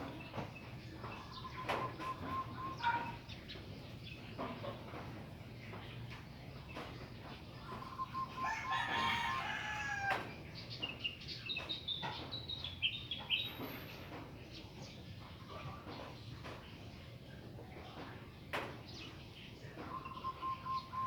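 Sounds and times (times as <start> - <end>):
rooster crowing: 8.4 - 10.3.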